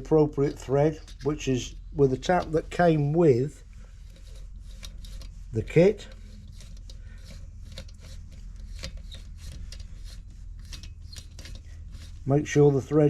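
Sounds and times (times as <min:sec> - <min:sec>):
thread tap clicking and scraping: 0:00.3 - 0:03.0, 0:03.9 - 0:12.3.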